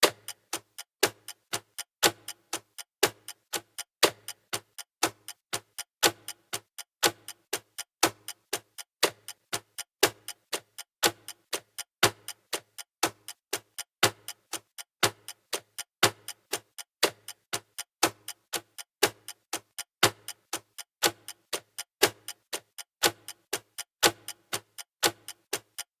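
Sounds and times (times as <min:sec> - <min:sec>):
clock ticking: 0:00.0 - 0:25.9.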